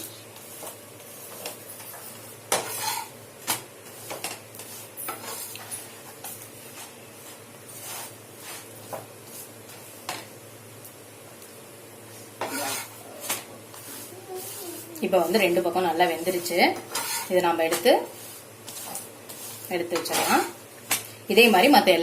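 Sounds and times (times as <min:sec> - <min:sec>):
utensil scraping on griddle: 0:02.5 - 0:03.2, 0:03.8 - 0:05.8, 0:06.7 - 0:09.8, 0:12.4 - 0:15.6, 0:16.2 - 0:20.6.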